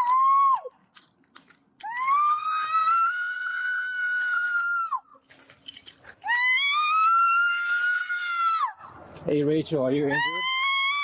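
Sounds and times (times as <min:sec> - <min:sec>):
woman screaming: 0:01.8 - 0:05.0, 0:06.2 - 0:08.8, 0:10.2 - 0:11.0.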